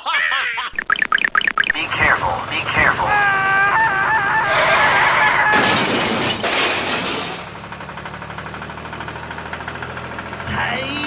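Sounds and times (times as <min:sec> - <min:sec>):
loud crashing and breaking: 0:01.7 - 0:08.6
low steady engine hum: 0:01.7 - 0:11.0.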